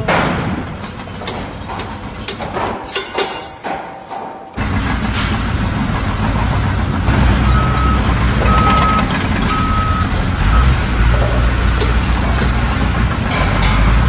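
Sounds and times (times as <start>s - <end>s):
heavy vehicle engine running: 0.0s - 2.9s, 3.6s - 14.0s
reversing alarm beeping: 7.2s - 14.0s.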